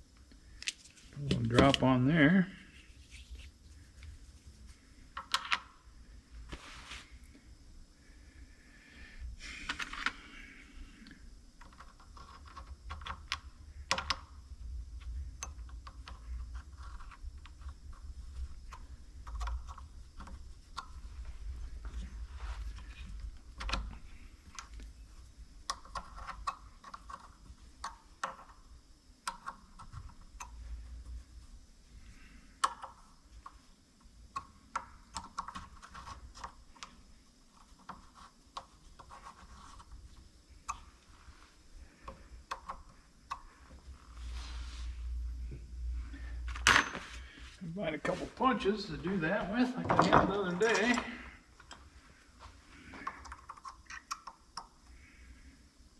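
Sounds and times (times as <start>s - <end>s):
metal parts clicking and tapping: 5.2s - 5.7s.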